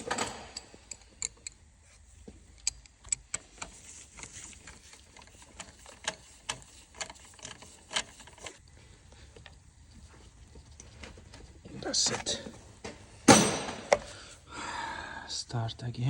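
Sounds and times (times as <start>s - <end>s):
socket wrench clicking: 2.5s - 8.2s.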